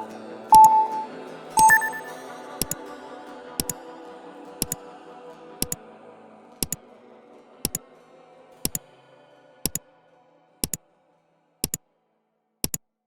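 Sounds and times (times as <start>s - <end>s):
electronic music: 0.0s - 2.8s
timer ticking double clicks: 0.0s - 2.8s.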